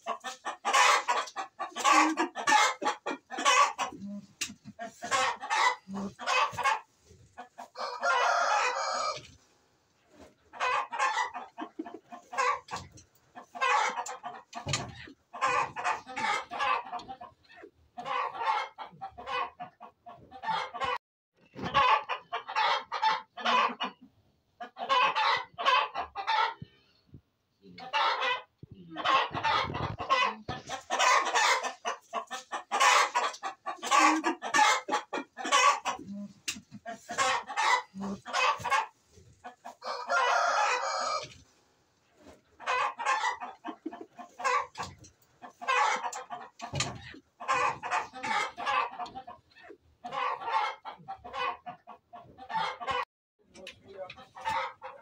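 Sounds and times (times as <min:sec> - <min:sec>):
chickens clucking: 0:00.0 - 0:55.0
rooster crowing: 0:07.8 - 0:09.2.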